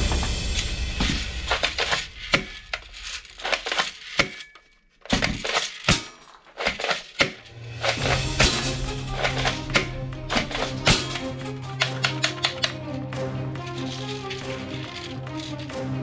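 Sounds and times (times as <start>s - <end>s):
background music: 0.0s - 2.8s, 7.4s - 16.0s
toy gun plastic clicks: 1.5s - 8.0s.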